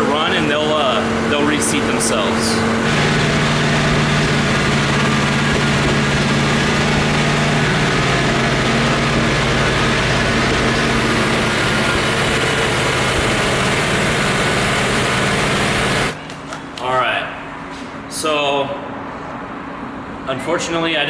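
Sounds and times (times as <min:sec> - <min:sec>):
car engine idling with misfire: 0:00.0 - 0:16.2.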